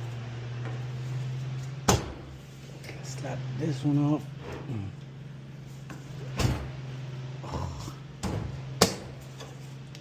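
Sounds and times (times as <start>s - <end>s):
steady low hum: 0.0s - 10.0s.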